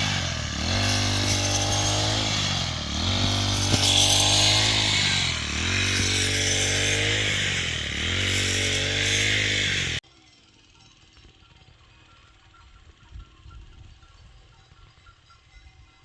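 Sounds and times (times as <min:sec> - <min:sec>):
small engine running hard: 0:00.0 - 0:10.0.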